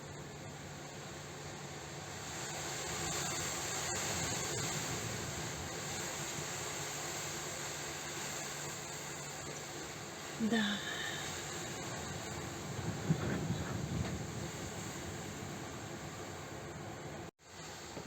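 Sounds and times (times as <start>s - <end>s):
strong wind gusting: 2.5s - 7.8s, 9.9s - 17.3s.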